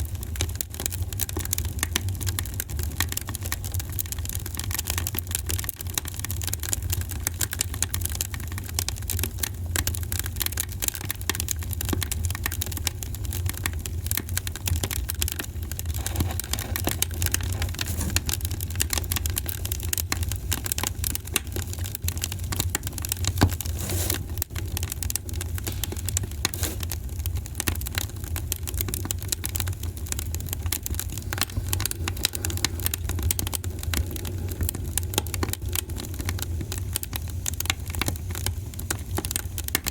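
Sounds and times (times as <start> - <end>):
wood fire crackling: 0.0 - 39.9
fire low rumble: 8.5 - 39.8.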